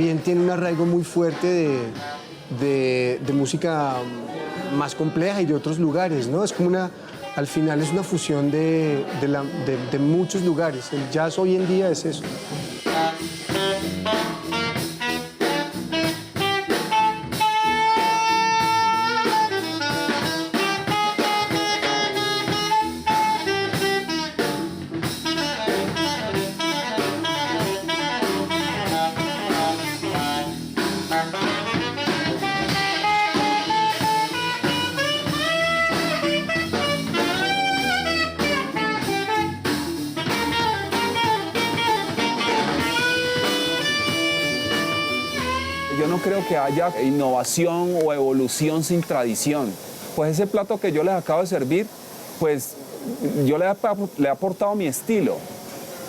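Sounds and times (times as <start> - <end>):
jazz horn melody: 0.0 - 56.0
drum kit: 11.4 - 55.5.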